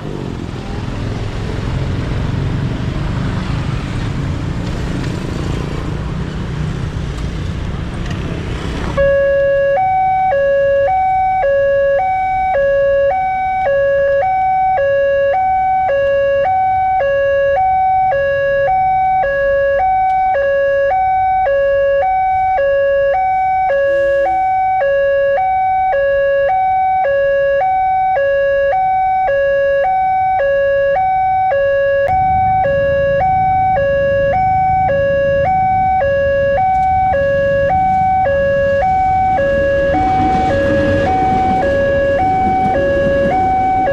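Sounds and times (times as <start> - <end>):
low traffic rumble: 0.0 - 43.9
two-tone level-crossing alarm: 9.0 - 43.9.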